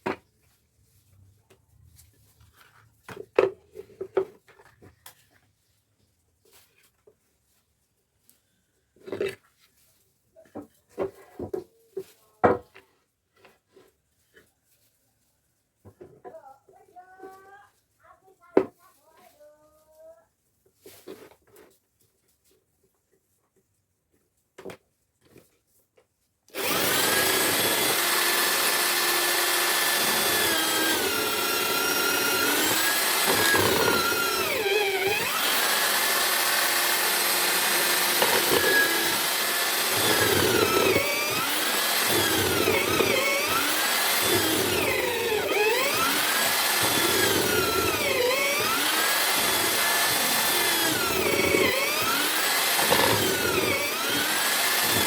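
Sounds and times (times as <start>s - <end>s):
drill-powered mortiser running: 26.5s - 55.0s.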